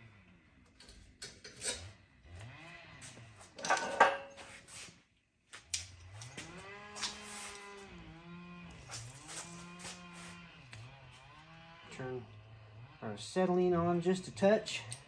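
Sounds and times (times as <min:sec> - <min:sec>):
metal tools clinking and scraping: 0:00.8 - 0:01.9, 0:03.5 - 0:04.8.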